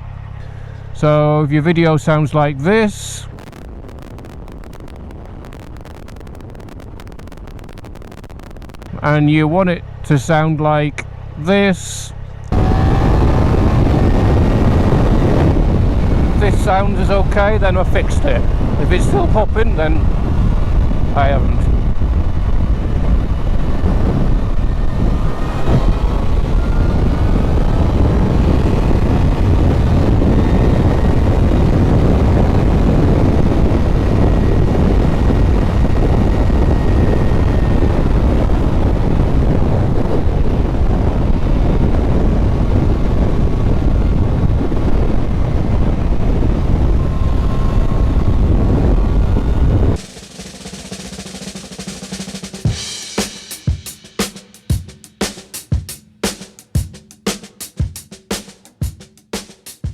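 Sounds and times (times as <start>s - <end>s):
motorcycle engine: 0.0s - 1.4s, 3.2s - 59.9s
heavy wind rush: 0.0s - 54.9s.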